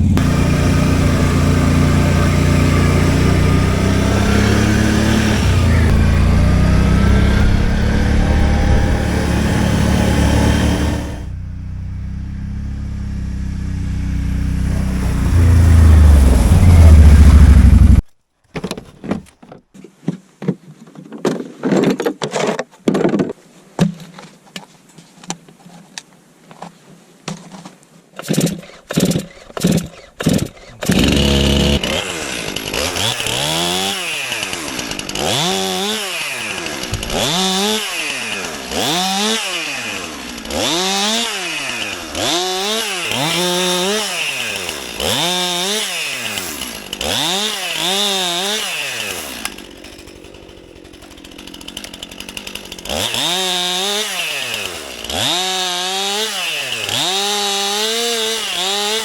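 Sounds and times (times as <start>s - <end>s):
chainsaw engine revving: 0.0s - 11.6s, 13.1s - 18.0s, 28.3s - 59.0s.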